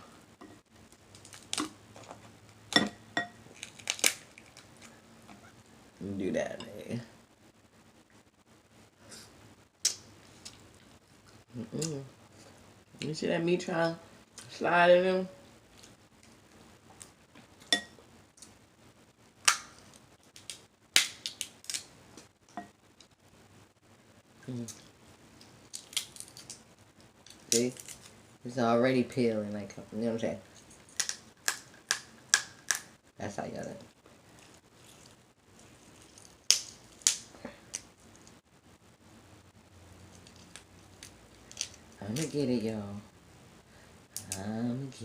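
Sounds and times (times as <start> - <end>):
crab shell cracking: 0.9 - 2.1, 3.5 - 5.0, 19.4 - 22.3, 25.4 - 28.2, 30.6 - 33.0, 34.4 - 38.4, 40.1 - 42.4.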